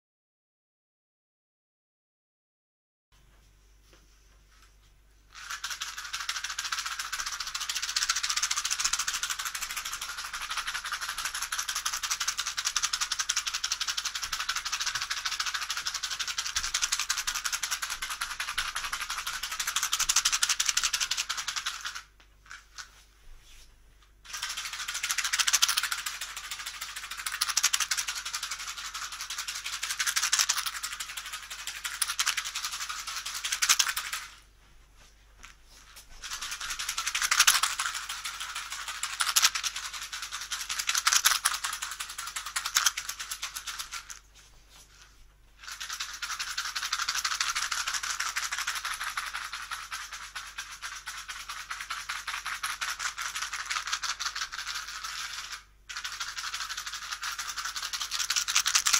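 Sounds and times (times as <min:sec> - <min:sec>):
rapid rattling buzz: 0:05.3 - 0:22.1, 0:24.2 - 0:34.4, 0:36.2 - 0:44.2.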